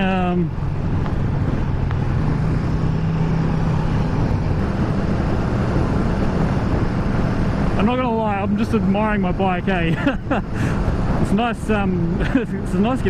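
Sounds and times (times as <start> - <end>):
motorcycle engine cruising: 0.0 - 13.0
wind rushing: 0.5 - 9.3.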